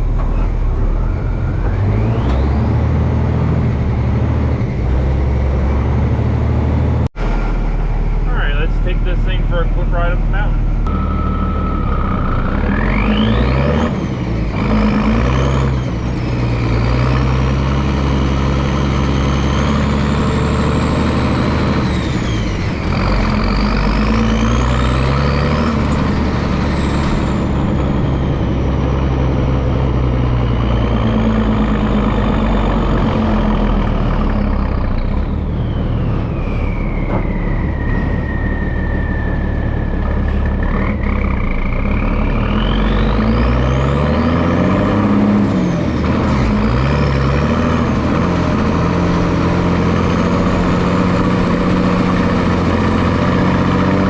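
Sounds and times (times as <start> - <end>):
diesel truck engine running: 0.0 - 54.0
high whine rising and falling: 35.6 - 40.7.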